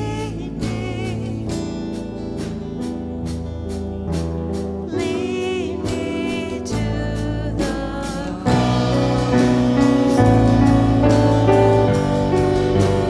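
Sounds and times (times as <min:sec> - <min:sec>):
person singing: 0:00.0 - 0:02.5, 0:04.9 - 0:13.0
percussion hits: 0:07.6 - 0:13.0
sustained chords: 0:08.3 - 0:13.0.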